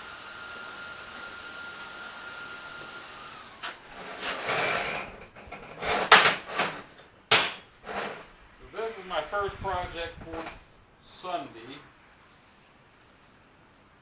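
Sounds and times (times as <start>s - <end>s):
steady hiss: 8.5s - 12.5s.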